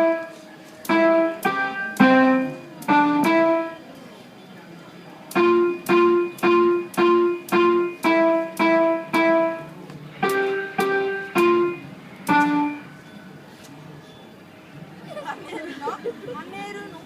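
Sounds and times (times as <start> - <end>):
electronic keyboard piano notes: 0.0 - 13.4.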